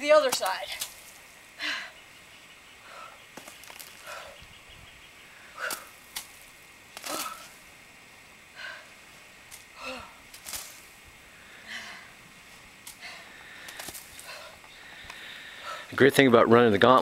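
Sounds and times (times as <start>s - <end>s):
short sharp breaths: 12.9s - 16.0s.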